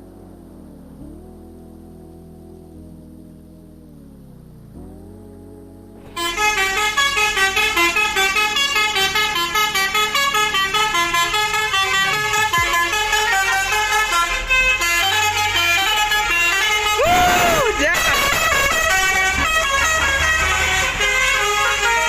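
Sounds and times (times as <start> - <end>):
low hum: 0.0 - 21.2
bus multi-tone horn tune: 6.0 - 22.0.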